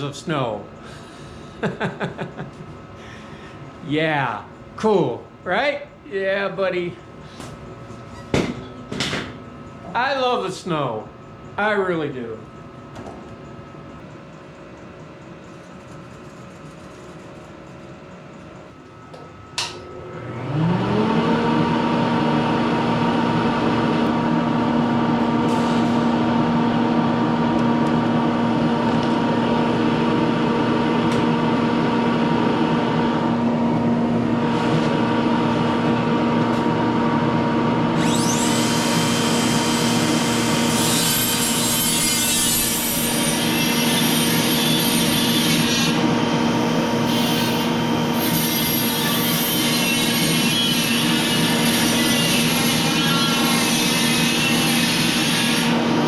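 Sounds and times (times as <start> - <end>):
power tool motor whining: 37.9 - 56.0.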